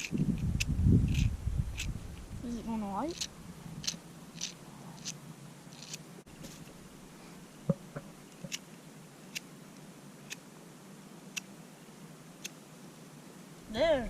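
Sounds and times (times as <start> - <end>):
flint wheel sparker rasping: 1.1 - 2.3, 3.1 - 6.0
dull knocks: 7.7 - 8.1.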